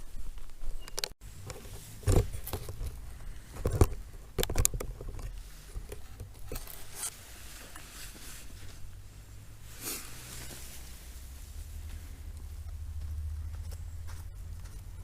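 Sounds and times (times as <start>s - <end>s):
low steady rumble: 1.2s - 15.0s
footsteps on dirt trail: 11.6s - 15.0s.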